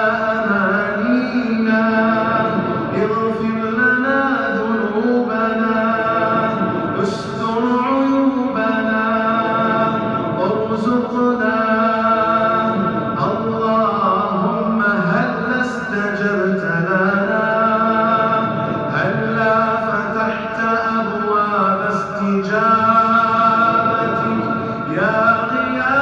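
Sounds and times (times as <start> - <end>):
man chanting: 0.0 - 26.0.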